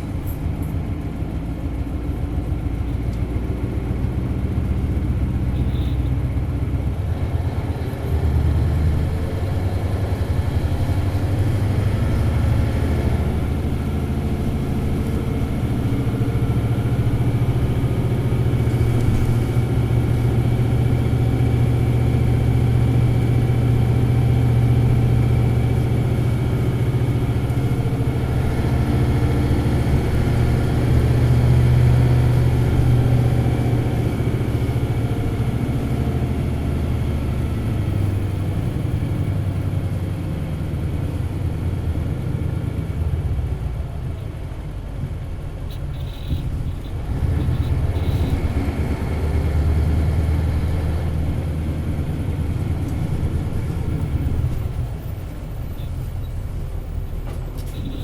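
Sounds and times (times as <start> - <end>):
bus diesel engine drone: 0.0 - 58.0.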